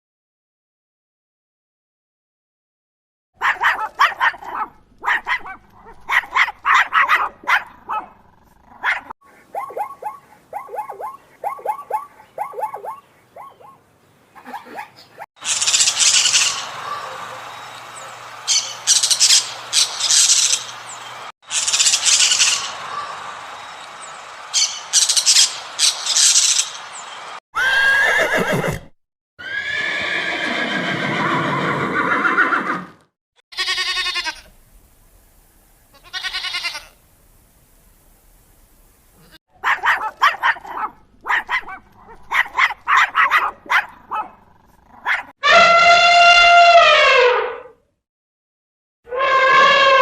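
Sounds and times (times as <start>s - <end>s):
animal calls with sliding pitch: 15.4s - 23.2s, 45.1s - 47.8s, 49.1s - 50.0s
high-pitched hissy squawks: 15.4s - 23.2s.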